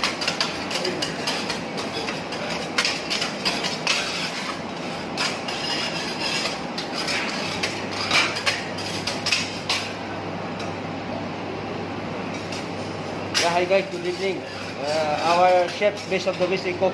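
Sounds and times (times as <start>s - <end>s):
metal utensils clacking on griddle: 0.0s - 9.9s, 13.3s - 16.5s.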